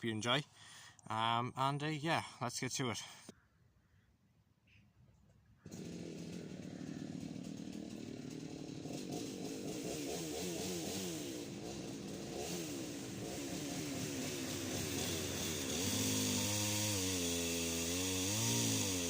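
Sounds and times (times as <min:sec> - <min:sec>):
chainsaw revving: 0:05.6 - 0:19.0.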